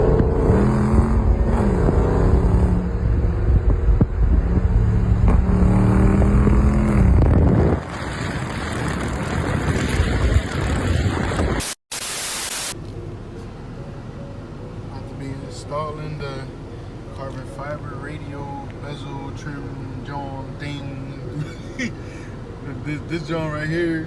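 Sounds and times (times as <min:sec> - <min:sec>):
car engine revving: 0:00.0 - 0:11.6.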